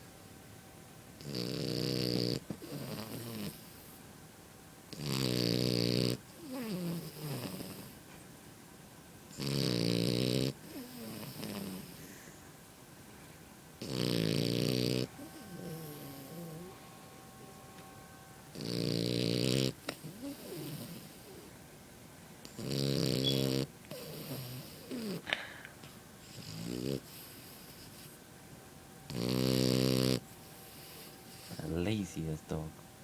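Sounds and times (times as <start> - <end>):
puppy snoring: 1.2 - 4.0, 4.9 - 8.2, 9.3 - 12.6, 13.8 - 17.0, 18.5 - 21.6, 22.4 - 28.2, 29.1 - 32.0.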